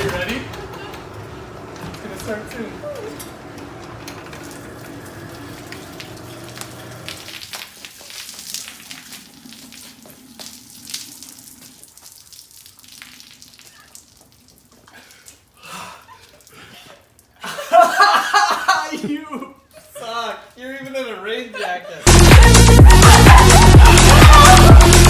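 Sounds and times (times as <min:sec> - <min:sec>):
garage door opener humming: 0:00.0 - 0:07.3.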